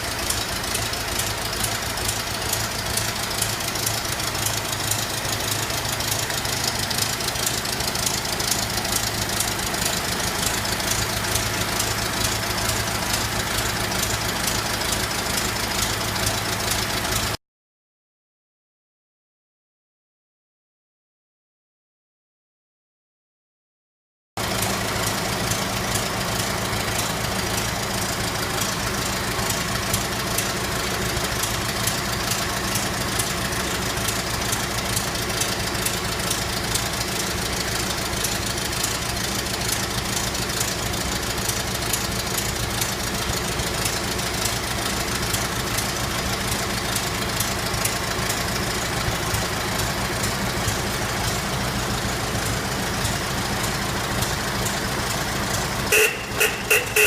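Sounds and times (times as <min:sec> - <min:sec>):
car engine running with ticking: 0:00.0 - 0:17.4, 0:24.4 - 0:57.0.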